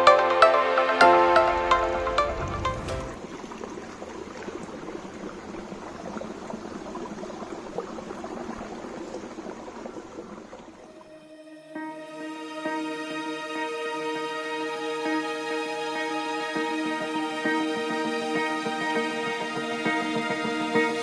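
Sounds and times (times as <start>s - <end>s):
stream babbling over rocks: 1.1s - 11.0s.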